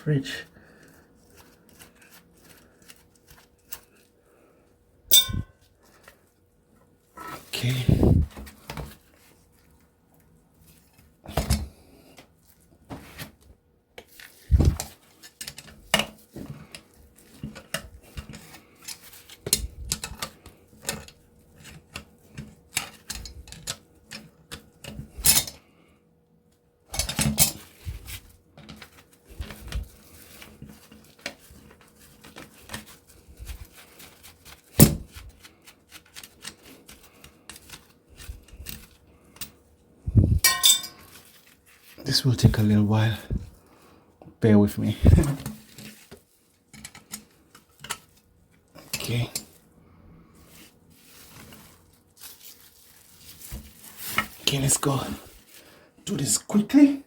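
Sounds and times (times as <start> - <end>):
metal tools clinking on metal casing: 5.1 - 5.6, 40.4 - 41.2.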